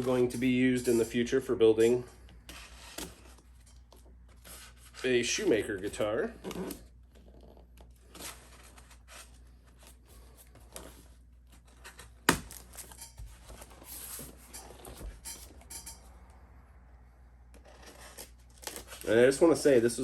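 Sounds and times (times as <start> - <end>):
cardboard box rustling and scraping: 6.3 - 15.2.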